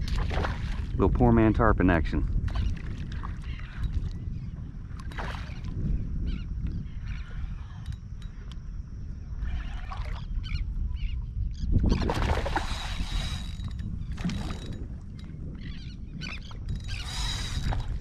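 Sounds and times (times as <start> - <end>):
fish splashing in water: 11.9 - 14.8.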